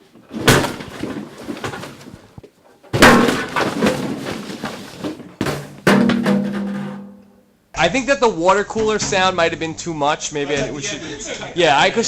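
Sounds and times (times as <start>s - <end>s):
clattering and rattling objects: 0.0s - 7.3s.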